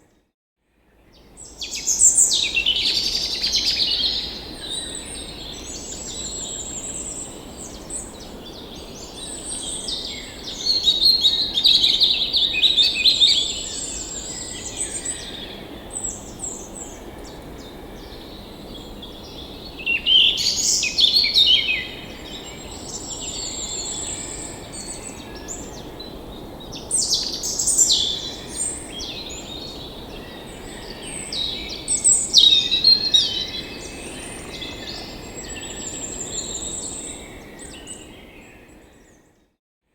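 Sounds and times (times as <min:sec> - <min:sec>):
birds singing and chirping: 0:01.4 - 0:39.2.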